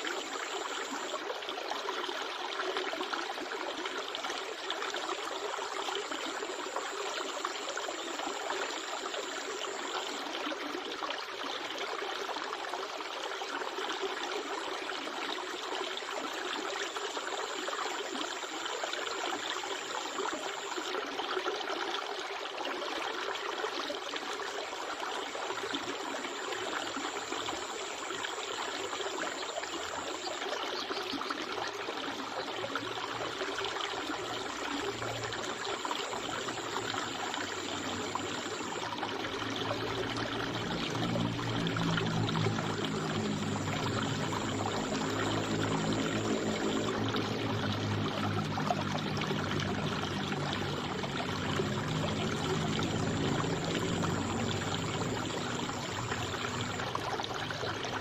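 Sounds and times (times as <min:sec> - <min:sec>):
river water rushing: 0:31.4 - 0:58.0.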